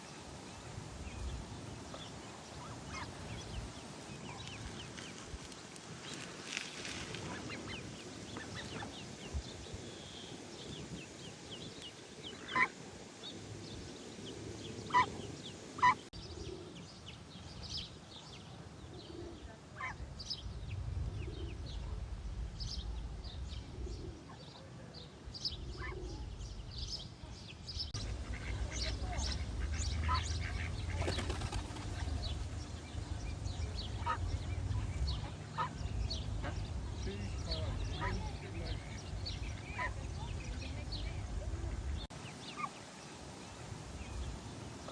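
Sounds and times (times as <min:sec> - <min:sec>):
soft low duck calls: 0:28.0 - 0:31.1, 0:33.4 - 0:42.0
duck calls: 0:28.0 - 0:31.2, 0:33.9 - 0:40.1
duckling high peeps: 0:28.0 - 0:32.6
low steady rumble: 0:31.8 - 0:42.1.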